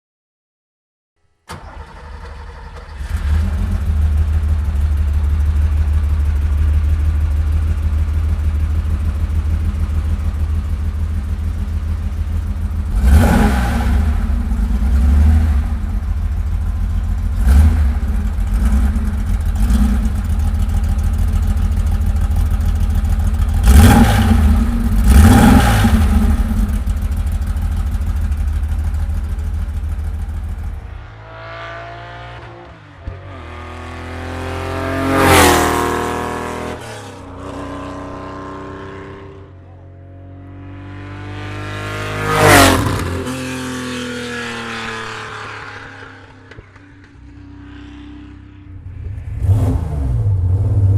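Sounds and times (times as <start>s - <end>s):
car engine starting and idling: 1.4s - 31.3s
engine revving: 1.5s - 50.9s.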